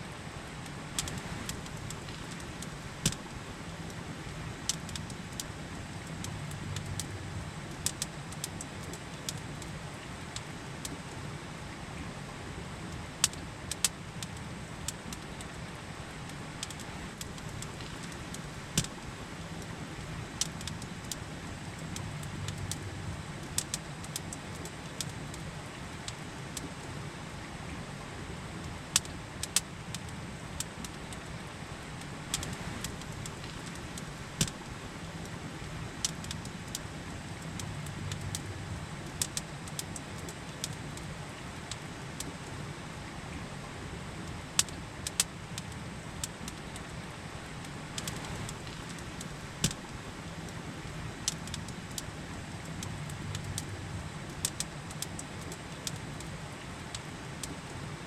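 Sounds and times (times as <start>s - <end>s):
campfire crackling and popping: 0.3s - 11.2s, 12.8s - 27.1s, 28.9s - 42.5s, 44.2s - 57.8s
river rushing: 46.8s - 58.0s.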